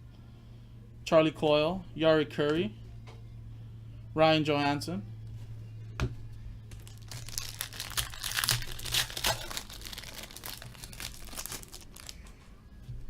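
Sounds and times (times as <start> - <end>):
card pack wrapper crinkling: 6.8 - 12.3.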